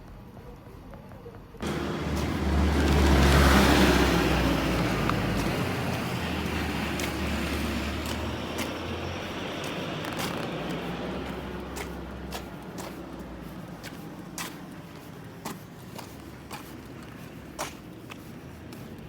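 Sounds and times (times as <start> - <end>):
vehicle passing with low rumble: 1.6 - 14.9.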